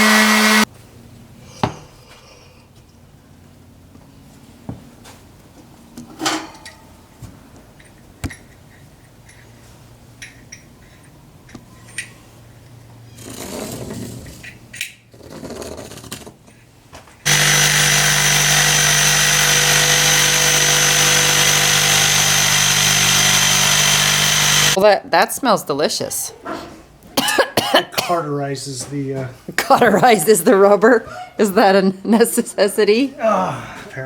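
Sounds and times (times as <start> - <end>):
power tool cutting rubber: 0.0 - 0.7, 17.3 - 24.8.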